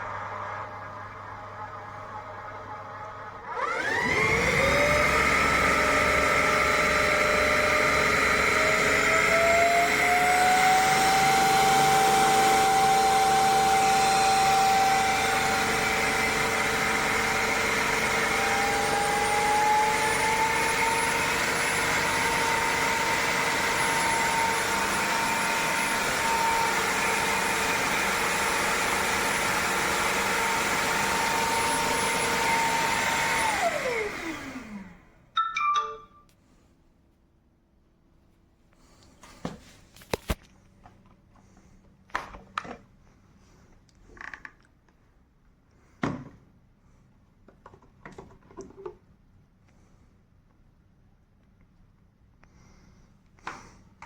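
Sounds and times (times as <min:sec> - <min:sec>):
vacuum motor whine: 0:00.0 - 0:35.2.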